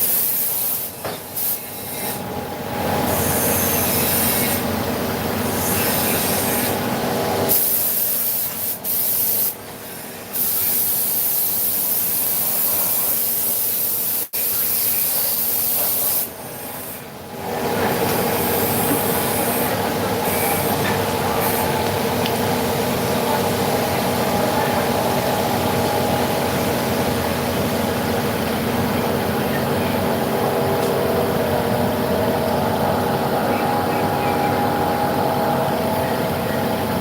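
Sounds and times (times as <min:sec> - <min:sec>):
milling machine hissing: 0:00.0 - 0:37.0
machine hum: 0:17.0 - 0:37.0.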